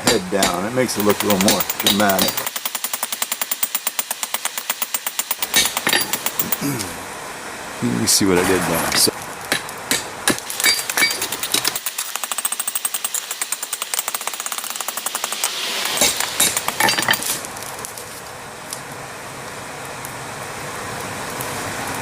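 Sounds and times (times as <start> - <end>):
hammer striking metal on anvil: 0.0 - 2.5, 5.4 - 6.6.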